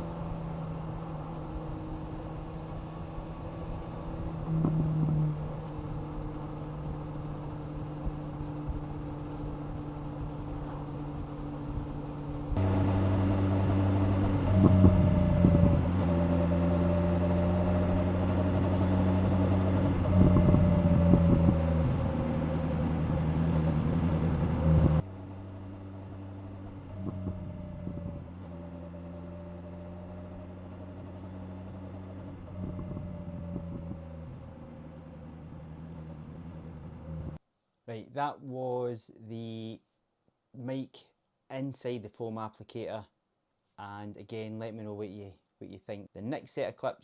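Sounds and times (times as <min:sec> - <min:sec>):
motorcycle engine running: 0:00.0 - 0:37.4
wind and road noise: 0:00.0 - 0:37.4.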